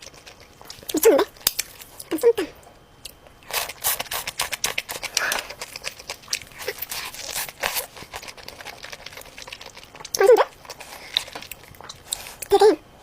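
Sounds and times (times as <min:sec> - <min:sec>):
food crunching while chewed: 0:00.0 - 0:02.1, 0:03.0 - 0:12.5.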